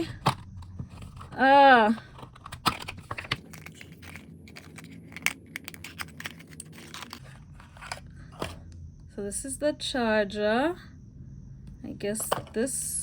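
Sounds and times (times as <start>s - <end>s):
clicks and rattles of unboxing: 0.0s - 8.6s.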